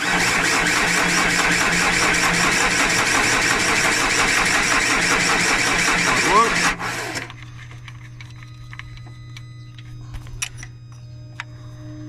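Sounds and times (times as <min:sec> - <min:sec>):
engine cranking on starter motor: 0:00.0 - 0:07.3.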